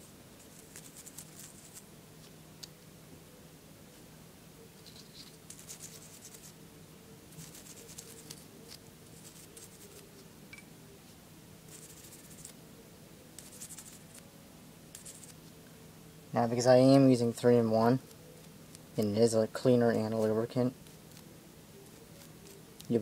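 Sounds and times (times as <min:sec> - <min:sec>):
faint steady hum: 0:00.0 - 0:23.0
brush scrubbing metal: 0:05.1 - 0:06.6.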